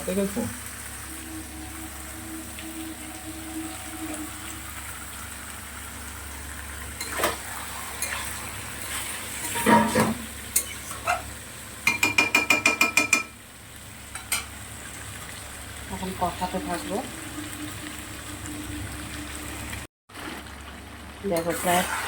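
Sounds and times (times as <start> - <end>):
chicken sizzling in hot oil: 0.0 - 22.0
metal spoon scraping a pan: 7.0 - 11.3
ringing metal taps on a pan: 11.9 - 13.4.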